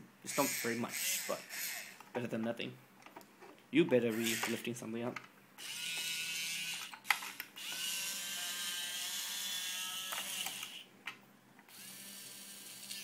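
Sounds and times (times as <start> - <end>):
small motors whining: 0.4 - 2.0, 5.6 - 10.8, 11.7 - 13.0.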